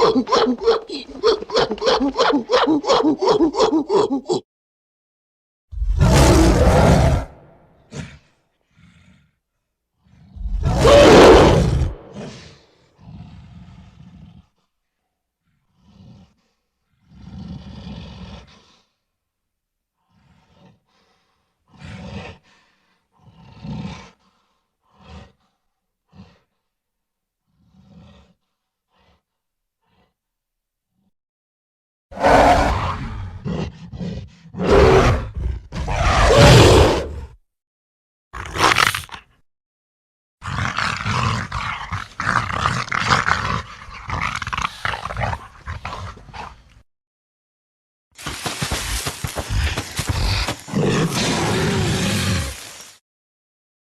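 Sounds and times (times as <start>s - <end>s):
giant ape growling: 0.0s - 4.4s, 40.4s - 46.6s, 49.6s - 52.6s
giant ape breathing and huffing: 7.9s - 9.4s, 11.9s - 14.8s, 15.4s - 19.0s, 20.0s - 26.7s, 27.5s - 30.2s, 32.2s - 35.9s, 40.4s - 46.8s, 48.8s - 51.3s.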